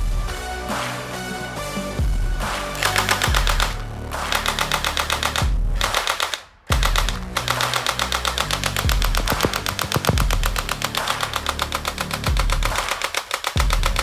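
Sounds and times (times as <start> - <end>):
toy gun rapid-fire sound effect: 2.8 - 14.0.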